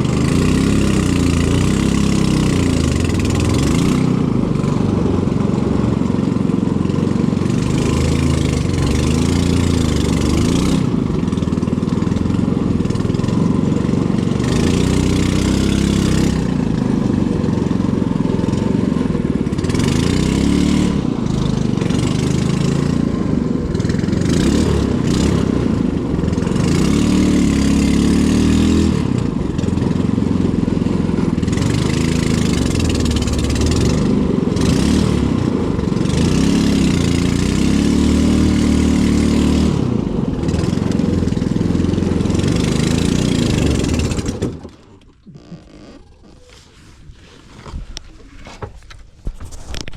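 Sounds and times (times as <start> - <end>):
small engine running: 0.0 - 48.2.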